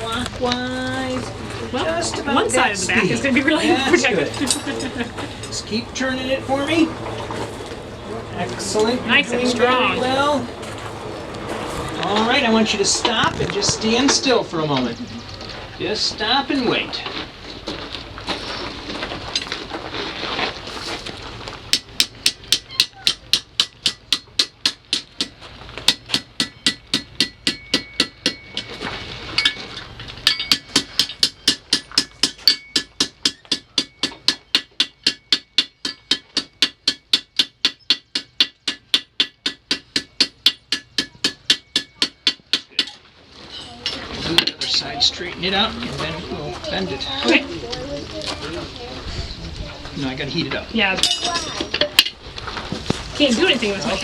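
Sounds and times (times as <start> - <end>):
hammer striking iron on anvil: 21.7 - 28.8, 30.2 - 43.0, 51.0 - 52.1.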